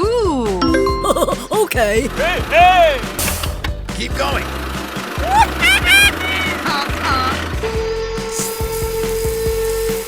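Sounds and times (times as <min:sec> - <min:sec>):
music with steady beat: 0:00.6 - 0:01.9.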